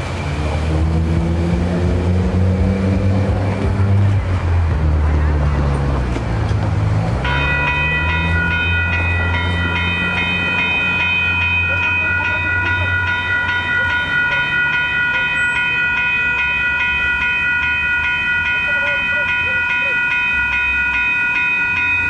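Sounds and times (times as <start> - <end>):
train rumbling past: 0.0 - 22.0
crossing warning bell ringing: 7.2 - 22.0.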